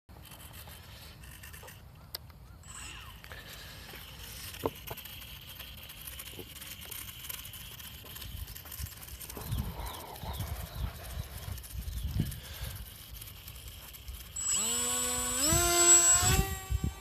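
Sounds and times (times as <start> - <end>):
small motor propeller whine: 0.1 - 17.0.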